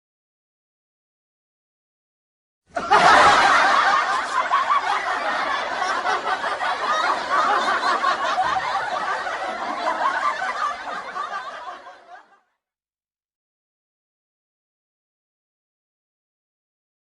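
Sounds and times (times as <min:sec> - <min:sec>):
people laughing: 0:02.7 - 0:12.5.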